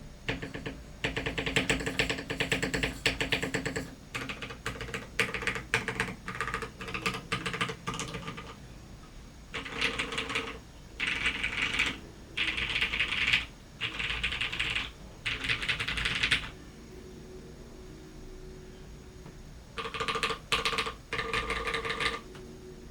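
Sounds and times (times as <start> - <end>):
mechanical keyboard typing: 0.3 - 8.6, 9.5 - 16.6, 19.8 - 22.5.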